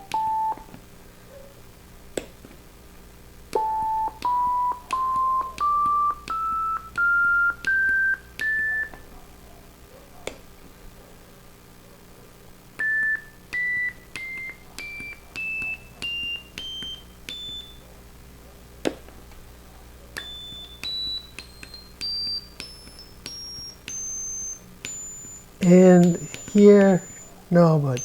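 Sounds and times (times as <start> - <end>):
electronic beeps rising in pitch: 20.2 - 28.0.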